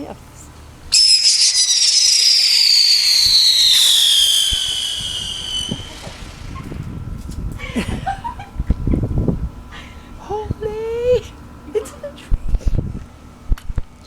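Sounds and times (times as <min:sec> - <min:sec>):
whistling firework: 0:00.9 - 0:07.6.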